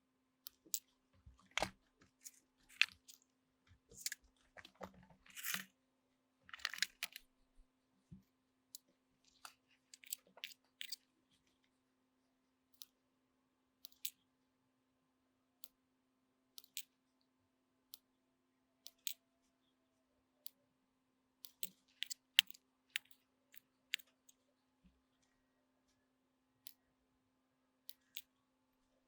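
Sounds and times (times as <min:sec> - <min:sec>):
small sharp clicks and ticks: 0:00.5 - 0:05.7, 0:06.5 - 0:07.3, 0:08.7 - 0:11.8, 0:12.7 - 0:13.0, 0:13.8 - 0:14.3, 0:15.6 - 0:15.8, 0:16.6 - 0:17.0, 0:18.8 - 0:19.2, 0:21.4 - 0:24.4, 0:26.6 - 0:26.9, 0:27.8 - 0:28.4.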